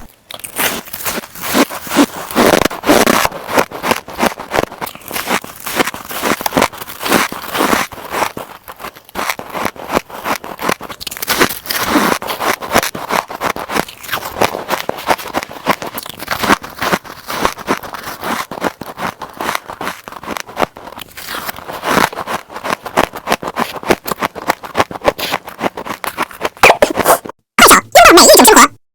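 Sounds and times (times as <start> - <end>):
ice being chewed: 0.0 - 27.3.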